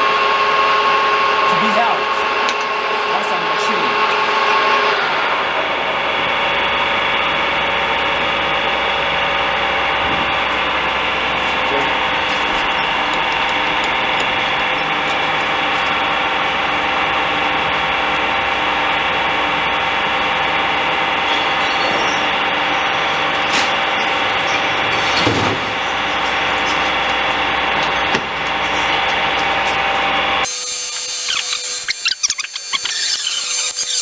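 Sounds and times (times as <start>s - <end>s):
lathe motor humming and whining: 28.6s - 34.0s.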